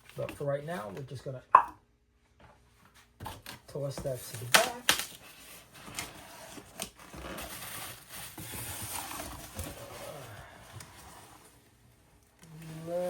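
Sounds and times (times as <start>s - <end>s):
cardboard rustling and scraping: 2.8s - 11.8s.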